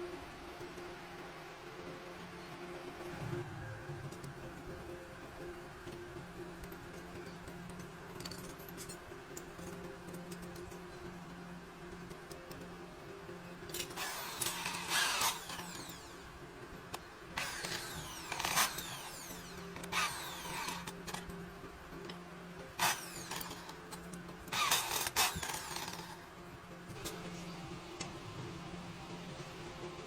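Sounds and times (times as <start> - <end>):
power tool bursts: 14.0 - 16.2, 17.4 - 21.2, 22.8 - 23.7, 24.5 - 26.2.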